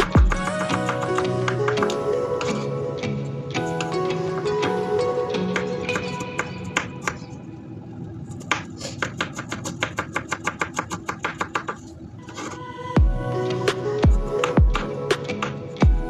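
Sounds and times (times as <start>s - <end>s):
music with deep bass: 0.0s - 1.4s, 13.0s - 15.0s.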